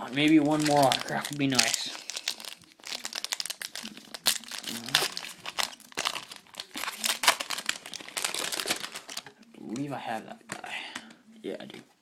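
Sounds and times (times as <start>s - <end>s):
wrapper tearing and crinkling: 0.0s - 9.3s.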